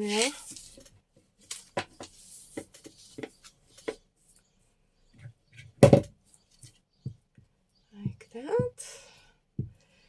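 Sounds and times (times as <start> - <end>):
paper and craft supplies handled: 0.0 - 4.0
knock on table: 5.8 - 6.1.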